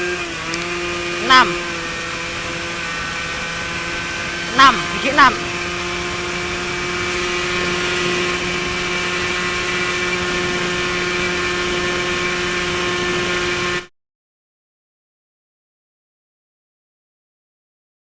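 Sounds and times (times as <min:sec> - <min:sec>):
motorcycle engine at high revs: 0:00.0 - 0:13.9.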